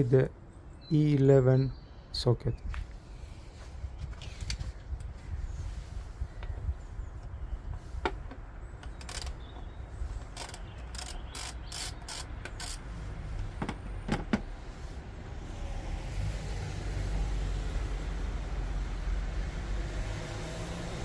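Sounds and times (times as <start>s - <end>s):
ratchet metallic clicks: 8.9s - 9.4s, 10.2s - 12.8s.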